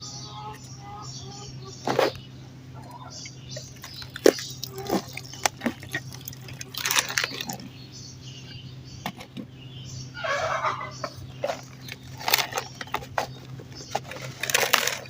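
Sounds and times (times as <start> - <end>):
dirt crumbling and crunching: 3.2 - 7.8, 11.0 - 15.0.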